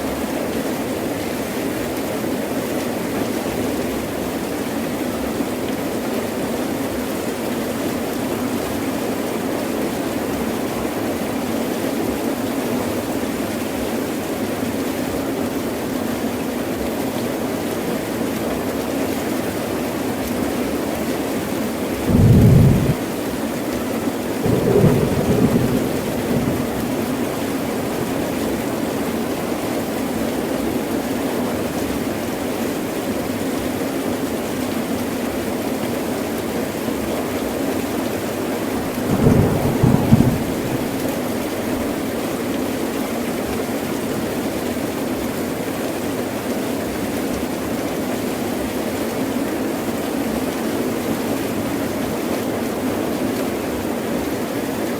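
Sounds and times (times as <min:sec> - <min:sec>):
heavy rain pouring: 0:00.2 - 0:54.9
low thunder rolls: 0:22.0 - 0:23.2, 0:24.5 - 0:28.3, 0:39.1 - 0:42.0.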